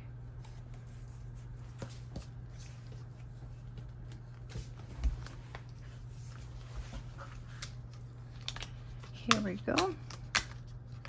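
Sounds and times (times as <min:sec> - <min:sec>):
steady low hum: 0:00.0 - 0:11.0
paper pages clicking and tapping: 0:03.0 - 0:11.0.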